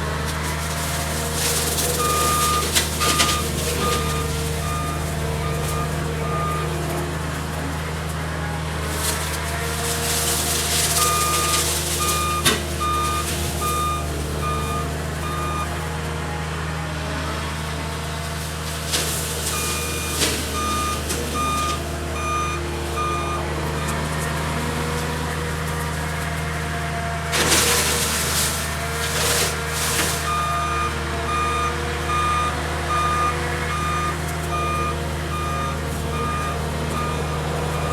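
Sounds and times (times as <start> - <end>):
diesel engine running: 0.0 - 37.9
backup alarm beeping: 1.9 - 6.7, 10.9 - 15.8, 19.5 - 24.1, 30.1 - 37.9.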